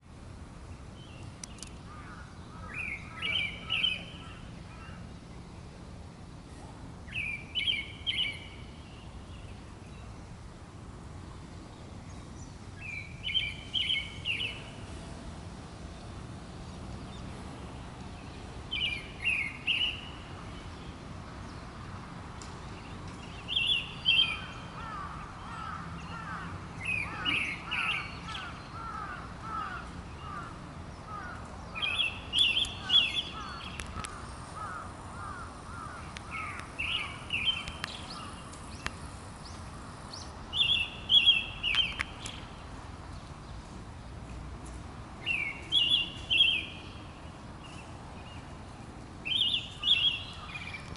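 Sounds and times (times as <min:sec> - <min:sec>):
bird singing bright phrase: 0:07.1 - 0:09.6.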